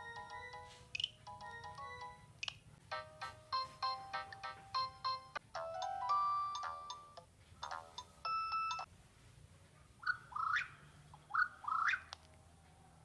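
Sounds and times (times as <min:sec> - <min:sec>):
electronic ringtone melody: 0:00.0 - 0:02.3, 0:02.9 - 0:08.9.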